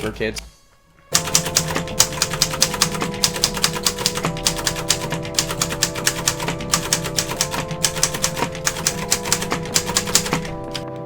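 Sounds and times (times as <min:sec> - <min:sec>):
background music with held tones: 0:00.0 - 0:11.0
manual typewriter typing: 0:01.1 - 0:11.0.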